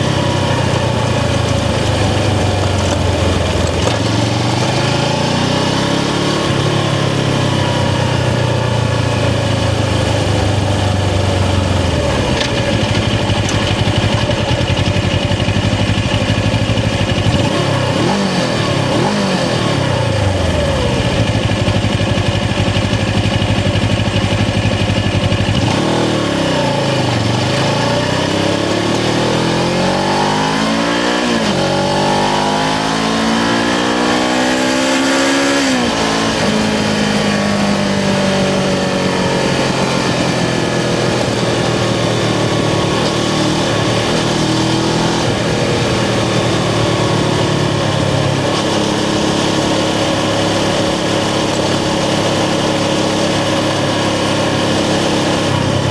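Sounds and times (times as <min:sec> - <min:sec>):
motorcycle engine revving: 0:00.0 - 0:55.9.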